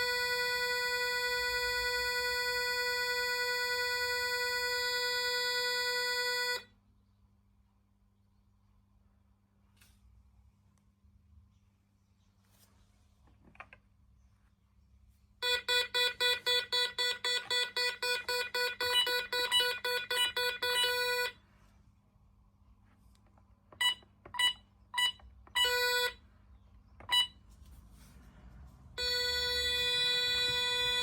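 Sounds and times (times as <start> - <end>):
intruder alarm beeping: 0.0 - 6.6, 15.4 - 21.4, 23.8 - 26.2, 29.0 - 31.0.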